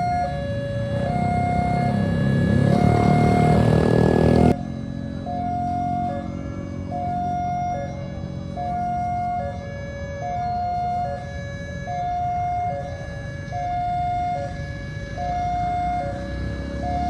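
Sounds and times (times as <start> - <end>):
two-tone crossing alarm: 0.0 - 17.0.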